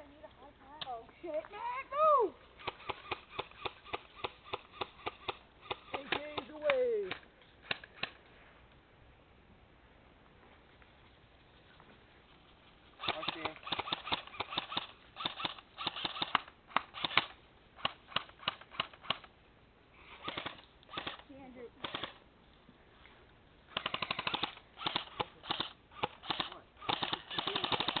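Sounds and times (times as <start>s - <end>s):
airsoft guns firing: 2.6s - 8.2s, 13.0s - 19.3s, 20.2s - 21.2s, 21.8s - 22.2s, 23.7s - 28.0s.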